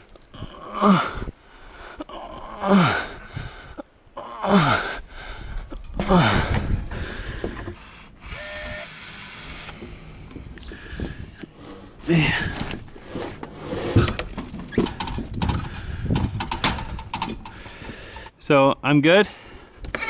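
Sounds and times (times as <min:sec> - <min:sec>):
people groaning with effort: 0:00.3 - 0:01.4, 0:02.0 - 0:05.1, 0:05.7 - 0:06.8.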